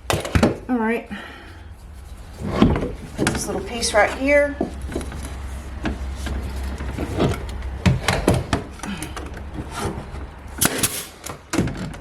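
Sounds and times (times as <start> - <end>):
wood squeaking against wood: 1.8 - 10.5.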